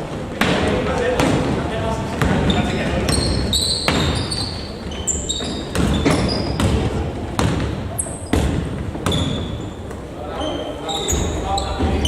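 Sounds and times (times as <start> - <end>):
basketball bouncing on court: 0.4 - 10.0
sneaker squeaks on floor: 2.1 - 12.0.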